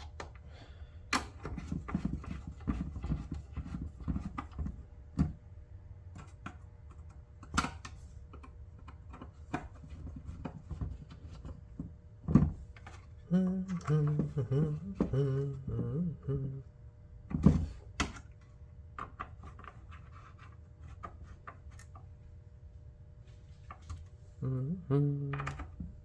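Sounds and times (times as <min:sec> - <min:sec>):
man humming: 0:13.2 - 0:16.7, 0:24.4 - 0:25.8.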